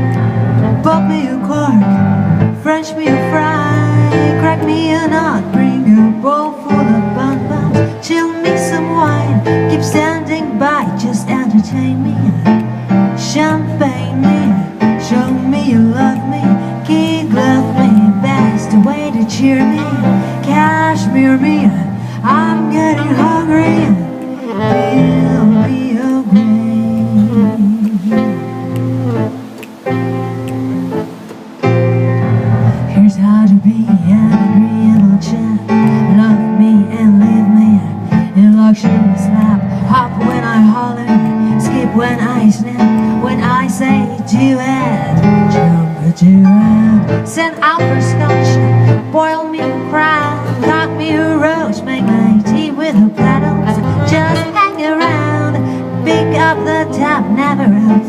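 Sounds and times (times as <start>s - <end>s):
live jazz band playing: 7.2s - 33.0s, 47.9s - 57.8s
woman scat singing: 13.3s - 28.2s, 49.2s - 58.0s.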